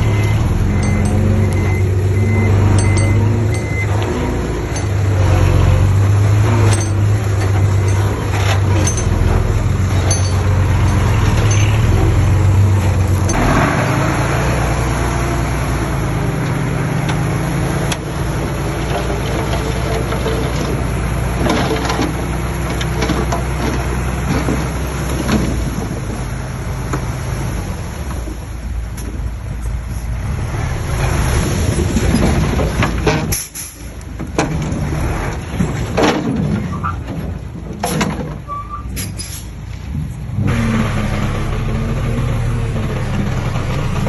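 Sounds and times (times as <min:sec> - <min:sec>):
diesel engines running: 0:00.0 - 0:44.0
metallic clanks: 0:00.1 - 0:13.7, 0:32.1 - 0:44.0.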